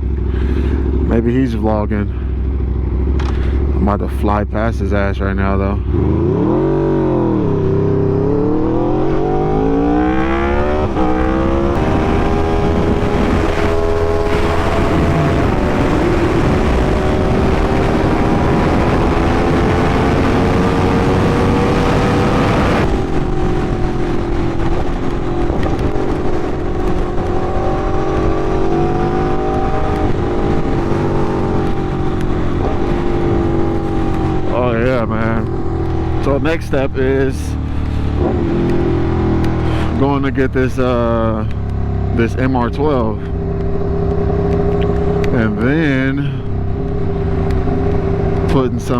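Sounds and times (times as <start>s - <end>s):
motorcycle engine accelerating: 0.0s - 48.9s.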